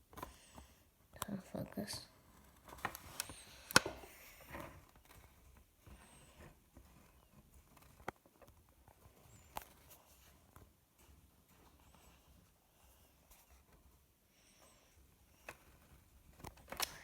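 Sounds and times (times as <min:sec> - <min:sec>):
small clicks and taps of parts: 0:02.6 - 0:04.0, 0:07.7 - 0:10.0.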